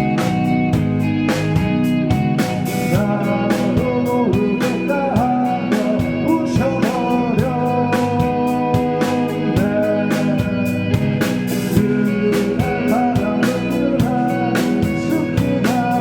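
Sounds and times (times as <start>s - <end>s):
rock band playing live: 0.0s - 16.0s.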